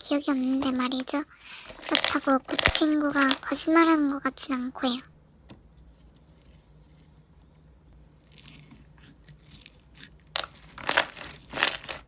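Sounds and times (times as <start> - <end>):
slime crackling: 0.0 - 4.4, 8.1 - 12.0.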